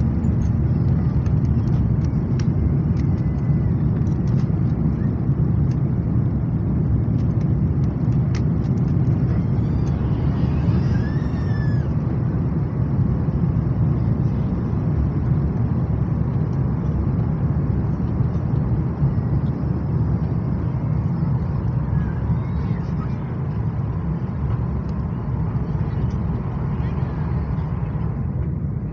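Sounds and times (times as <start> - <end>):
vehicle cabin rumble: 0.0 - 28.9.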